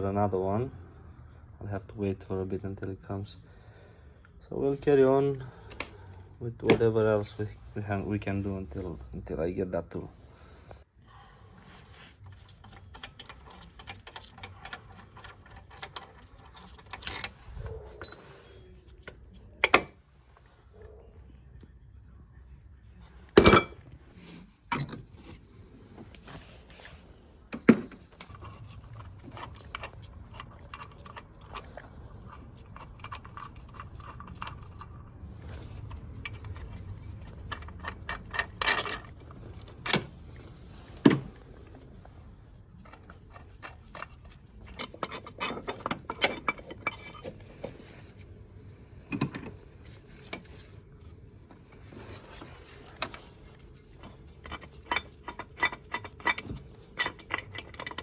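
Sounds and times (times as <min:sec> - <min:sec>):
metal tools clinking and scraping: 0:11.8 - 0:20.1, 0:23.3 - 0:25.5, 0:26.1 - 0:58.0.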